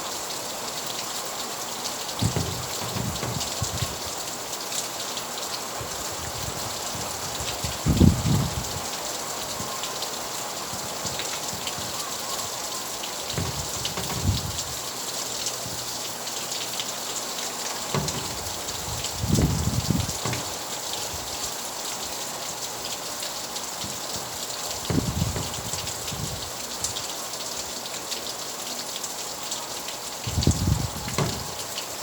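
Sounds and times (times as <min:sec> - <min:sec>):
steady rain falling: 0:00.0 - 0:32.0
low thumps: 0:02.2 - 0:04.2, 0:13.3 - 0:14.9, 0:17.9 - 0:21.4, 0:23.8 - 0:26.6, 0:30.4 - 0:31.7.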